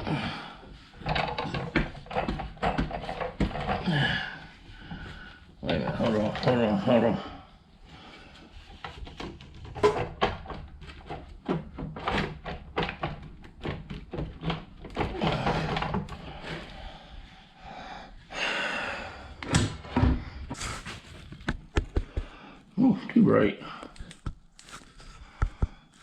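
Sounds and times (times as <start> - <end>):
metal parts knocking and clunking: 1.0 - 4.0, 8.8 - 16.6.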